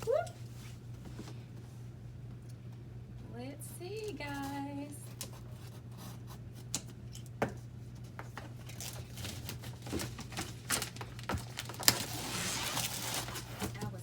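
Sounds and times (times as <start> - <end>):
steady low hum: 0.0 - 14.0
rustling scrape: 11.6 - 14.0.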